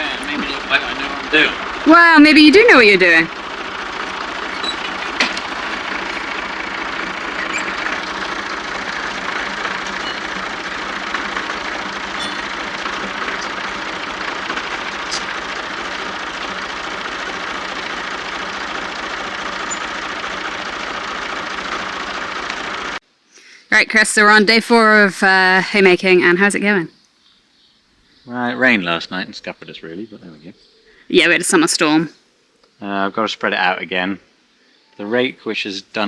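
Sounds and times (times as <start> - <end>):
tractor engine running: 0.0 - 23.0, 23.8 - 26.9, 31.1 - 32.1.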